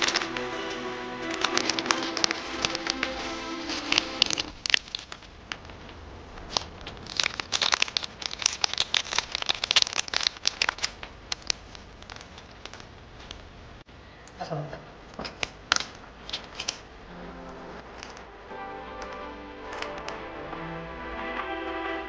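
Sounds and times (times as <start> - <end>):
plastic packaging crinkling: 0.0 - 0.5, 1.3 - 5.8, 6.4 - 13.5.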